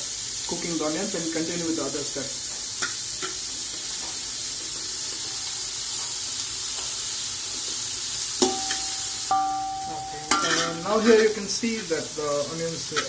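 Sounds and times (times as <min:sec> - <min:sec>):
onions sizzling in hot oil: 0:00.0 - 0:13.0
metallic clank with ringing: 0:08.4 - 0:10.9.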